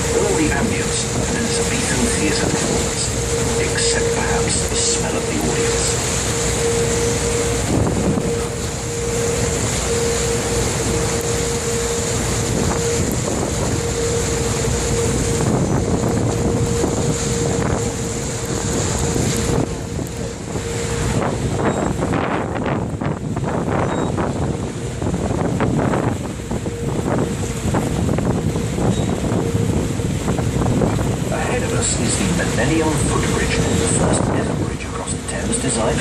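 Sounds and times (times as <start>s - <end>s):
boat engine humming: 0.0s - 36.0s
wind buffeting microphone: 0.0s - 36.0s.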